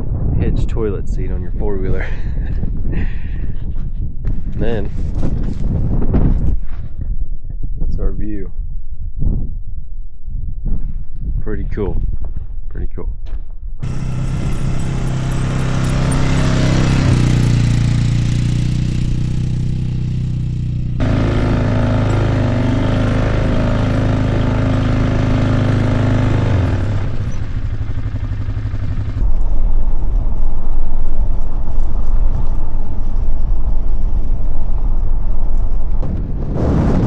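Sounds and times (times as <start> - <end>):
wind buffeting microphone: 0.0 - 19.4, 29.2 - 37.0
vehicle engine running: 13.8 - 35.3.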